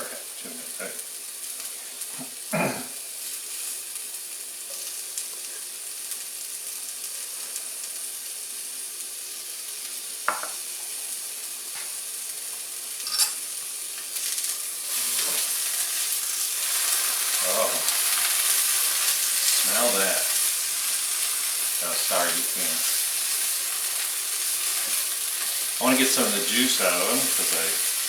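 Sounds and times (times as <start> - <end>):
vegetables sizzling in a frying pan: 0.0 - 28.0
utensil knocking against pan: 10.3 - 10.6.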